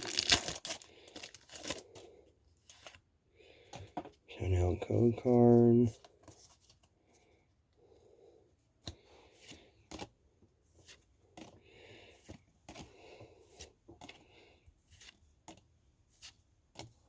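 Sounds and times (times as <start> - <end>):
trading cards rustling and clicking: 0.0 - 3.0.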